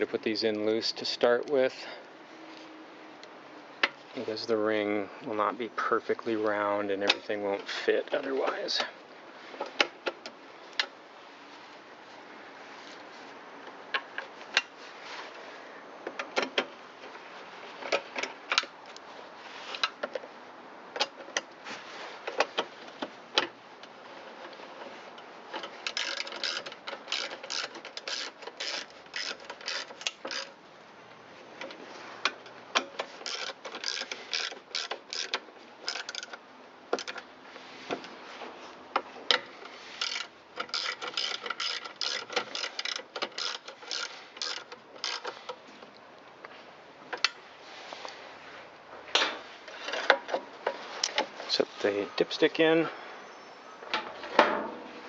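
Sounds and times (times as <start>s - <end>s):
ratchet wrench clicking: 25.9s - 30.6s, 32.8s - 36.4s, 40.0s - 45.6s.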